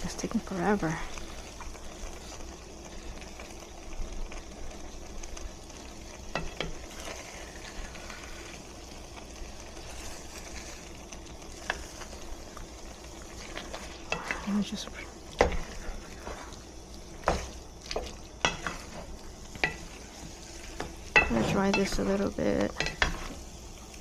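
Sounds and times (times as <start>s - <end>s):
eggs sizzling in a pan: 0.0s - 24.0s.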